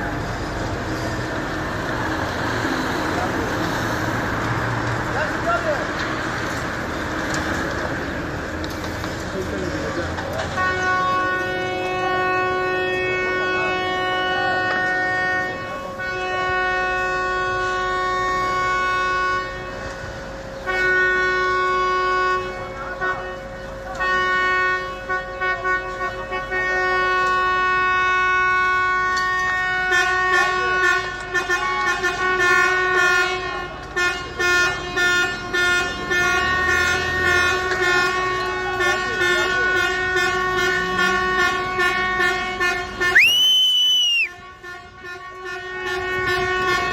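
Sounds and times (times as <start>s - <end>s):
vehicle horns blasting: 10.4s - 46.9s.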